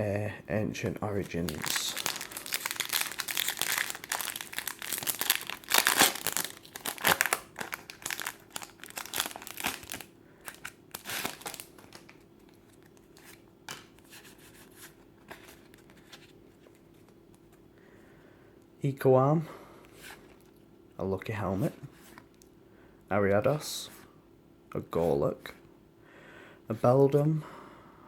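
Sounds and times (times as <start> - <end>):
foil wrapper crinkling and tearing: 1.1 - 13.0.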